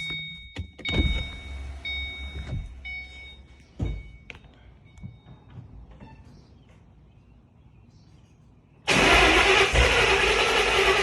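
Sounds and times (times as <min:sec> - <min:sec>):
dull thunks: 0:00.0 - 0:01.6, 0:02.3 - 0:02.9, 0:03.8 - 0:04.2
car warning chime beeping: 0:00.0 - 0:06.2.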